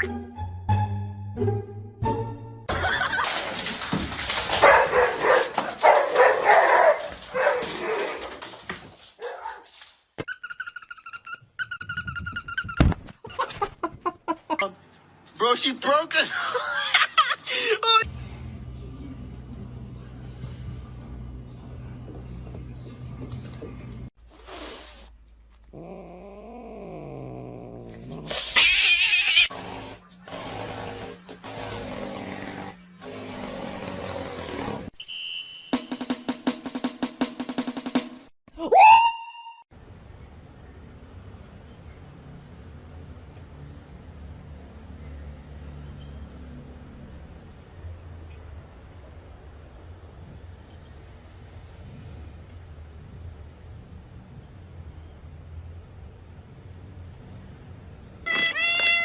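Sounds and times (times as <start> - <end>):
dog barking and whining: 4.6 - 8.3, 9.2 - 9.7
cat yowling: 28.3 - 29.5, 58.2 - 59.0.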